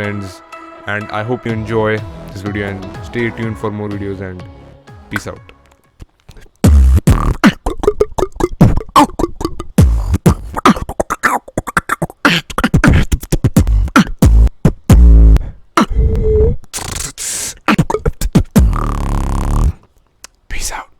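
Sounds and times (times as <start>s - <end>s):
beatboxing: 6.3s - 20.9s
buzzing bass sounds: 6.6s - 11.0s, 13.0s - 17.1s, 18.0s - 19.8s.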